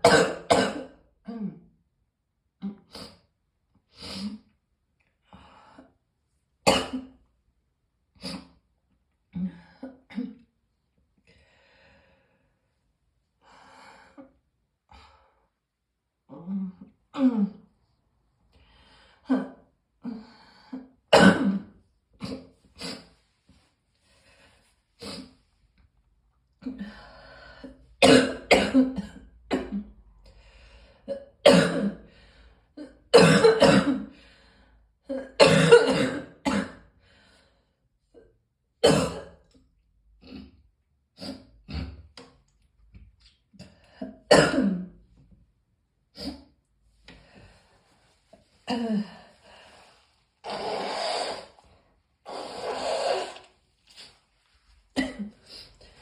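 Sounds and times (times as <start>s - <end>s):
person coughing: 0.0s - 1.0s, 6.7s - 7.1s, 21.1s - 22.4s, 28.0s - 29.8s, 31.4s - 32.0s, 33.1s - 34.1s, 35.1s - 36.8s, 38.8s - 39.4s, 44.3s - 44.9s, 55.0s - 55.4s
breaths: 11.2s - 12.7s, 13.4s - 14.3s, 18.6s - 19.3s, 23.0s - 25.4s, 26.8s - 27.9s, 30.2s - 31.1s, 32.0s - 32.8s, 34.1s - 34.9s, 36.9s - 37.8s, 47.0s - 54.7s.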